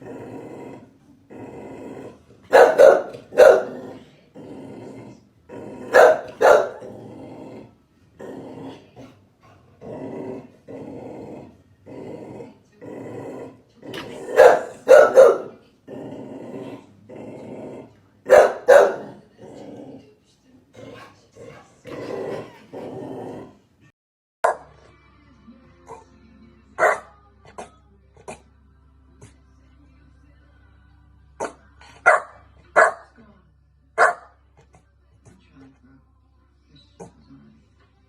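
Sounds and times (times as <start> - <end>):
loud sharp dog barks: 2.5 - 4.0, 5.9 - 6.9, 14.0 - 15.6, 18.3 - 19.2, 24.4 - 24.6.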